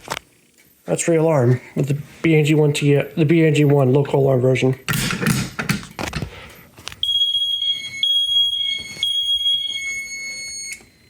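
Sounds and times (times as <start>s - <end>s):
fire alarm beeping: 7.0s - 11.0s.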